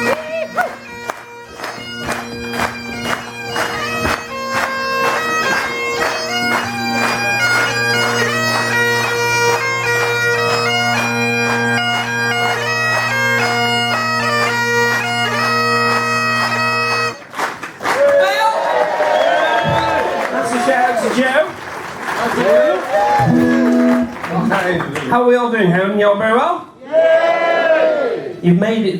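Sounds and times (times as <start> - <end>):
bagpipes playing: 0.0 - 17.3, 22.9 - 24.3.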